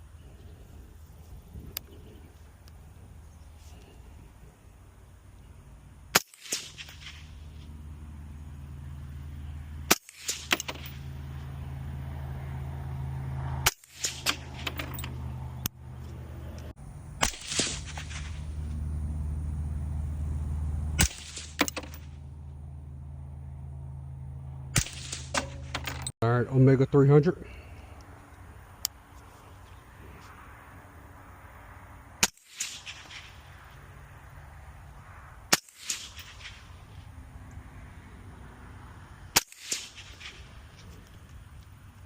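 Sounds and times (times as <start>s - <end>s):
steady low hum: 0.0s - 32.2s
suppressed rifle shots: 6.1s - 7.7s, 17.2s - 18.7s, 21.0s - 22.0s, 24.8s - 25.9s, 39.3s - 40.5s.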